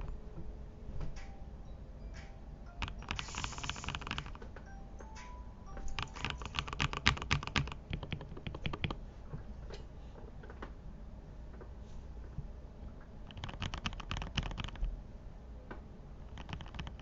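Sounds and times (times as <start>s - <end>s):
mechanical keyboard typing: 2.7s - 9.0s, 13.3s - 14.9s, 16.3s - 17.0s.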